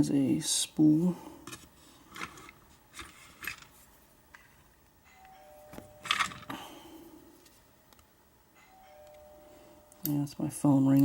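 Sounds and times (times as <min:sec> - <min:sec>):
phone ringtone two-note chime: 0:05.1 - 0:06.3, 0:08.7 - 0:09.9
metal lock parts clicking: 0:06.0 - 0:06.6.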